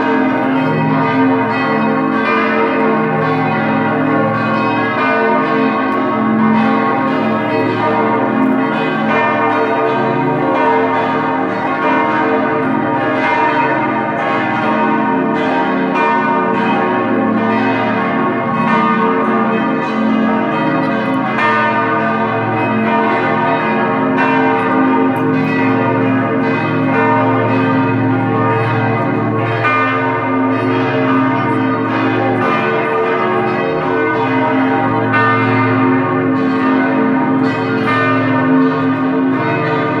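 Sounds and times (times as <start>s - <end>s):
church bells pealing: 0.0s - 40.0s.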